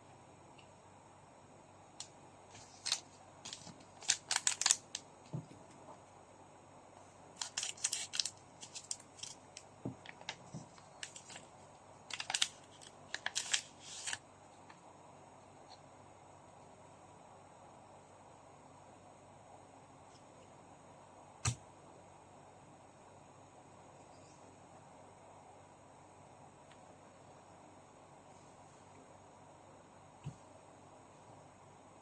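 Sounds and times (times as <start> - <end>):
foil packs crinkling: 2.6 - 5.0, 7.4 - 9.4, 10.0 - 11.5, 12.1 - 14.2.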